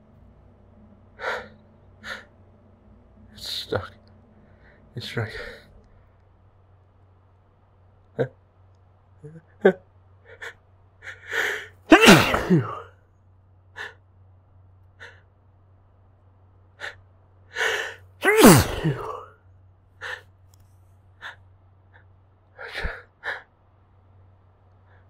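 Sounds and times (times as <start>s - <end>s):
gasping breath: 10.3s - 12.7s, 16.8s - 19.3s, 20.0s - 20.3s
person sneezing: 11.8s - 12.9s, 17.6s - 19.3s.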